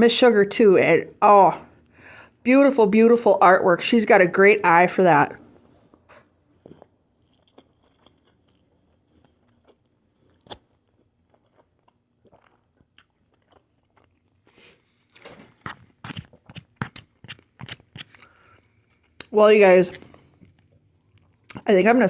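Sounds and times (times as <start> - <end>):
crunchy bites and chewing: 6.2 - 19.3.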